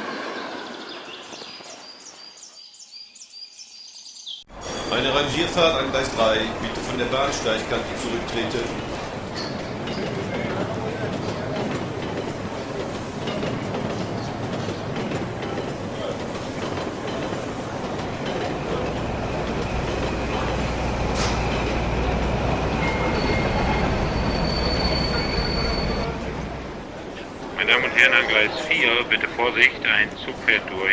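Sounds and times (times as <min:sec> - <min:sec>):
high wheel squeal: 0:04.5 - 0:10.6, 0:12.2 - 0:26.7
train wheel clatter: 0:04.5 - 0:30.9.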